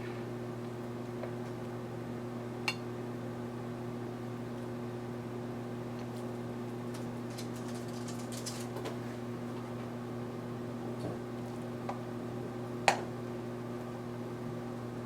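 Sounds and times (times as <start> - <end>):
microwave oven humming: 0.0 - 15.0
food crackling in microwave: 5.9 - 9.8.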